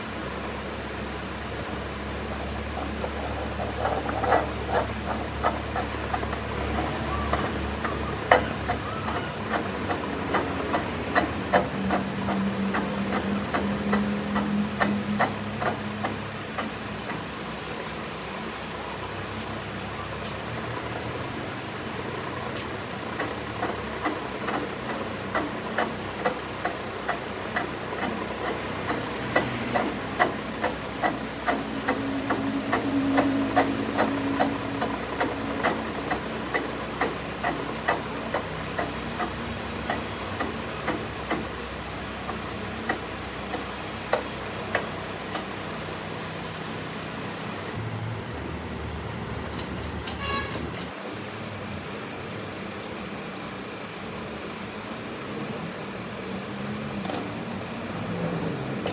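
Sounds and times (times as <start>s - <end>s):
machine hum: 0.0s - 53.7s
sharp metal taps: 3.0s - 17.2s.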